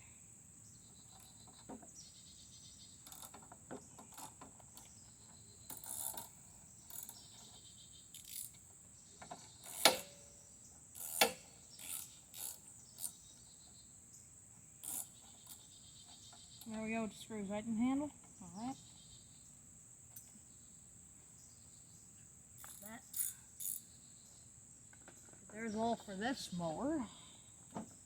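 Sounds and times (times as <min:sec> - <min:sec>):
crickets chirping: 0:00.0 - 0:28.0
hand tool clicks and rattles: 0:03.0 - 0:08.7, 0:09.3 - 0:10.3, 0:10.9 - 0:13.2, 0:14.8 - 0:15.7, 0:22.6 - 0:23.8
metal clanks: 0:09.3 - 0:10.3.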